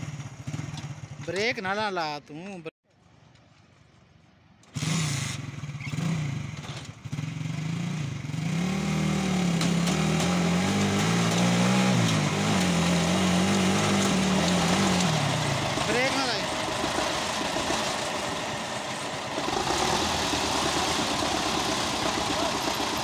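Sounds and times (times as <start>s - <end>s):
tractor engine starting: 4.6s - 7.6s, 8.2s - 23.0s.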